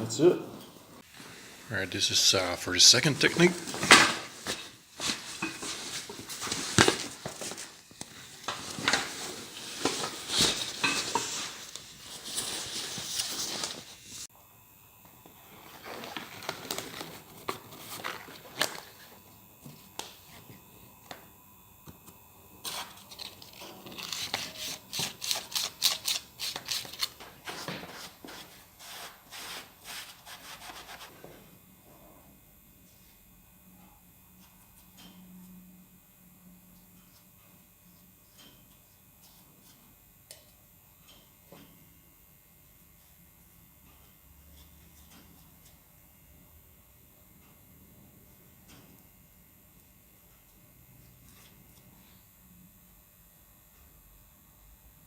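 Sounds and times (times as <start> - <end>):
dry suit rustling and crinkling: 0.8 - 14.3, 15.4 - 19.2.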